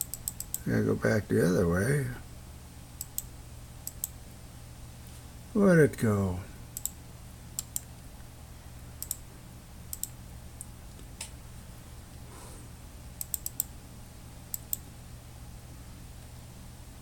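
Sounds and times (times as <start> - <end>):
computer mouse and key clicks: 0.0 - 0.6, 3.0 - 4.2, 6.8 - 7.0, 7.6 - 7.9, 9.0 - 9.2, 9.9 - 11.3, 13.2 - 13.7, 14.5 - 14.8
steady low hum: 0.0 - 17.0.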